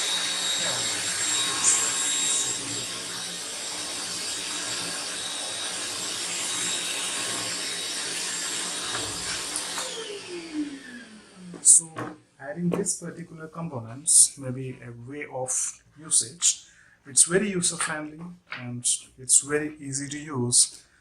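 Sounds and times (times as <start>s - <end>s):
vacuum rubbing on floor: 0.0s - 12.0s
vacuum cleaner running: 0.0s - 14.3s.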